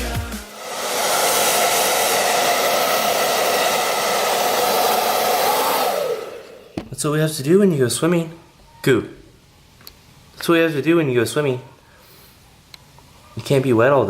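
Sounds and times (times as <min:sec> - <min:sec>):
blow dryer running: 0:00.0 - 0:06.9.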